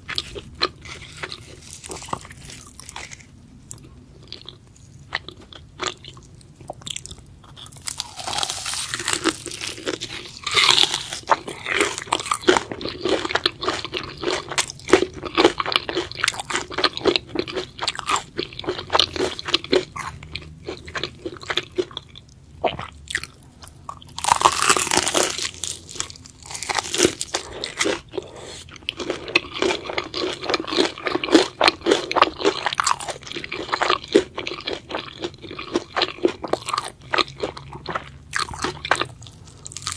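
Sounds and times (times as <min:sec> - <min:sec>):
chewing crunchy food: 0:00.0 - 0:39.9.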